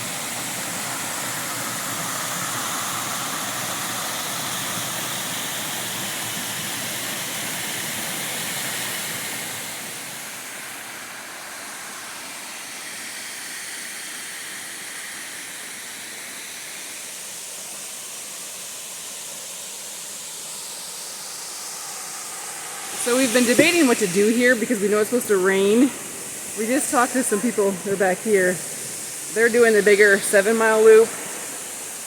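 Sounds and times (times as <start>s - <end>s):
waterfall rushing over rock: 0.0s - 32.0s.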